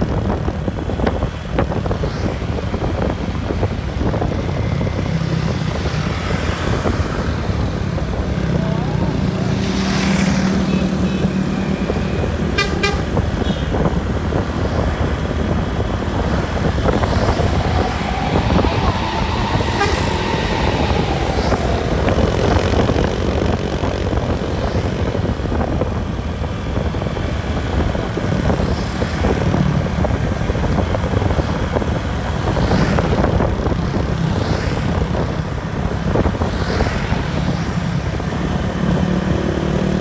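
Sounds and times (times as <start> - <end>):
bus engine drone: 0.0 - 40.0
road noise: 0.0 - 40.0
brief whooshes: 16.2 - 23.6.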